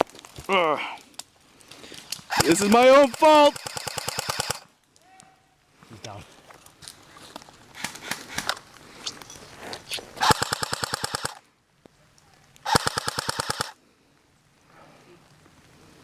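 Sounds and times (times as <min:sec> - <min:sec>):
airsoft rifle full-auto bursts: 0:02.3 - 0:04.6, 0:10.2 - 0:11.4, 0:12.7 - 0:13.8.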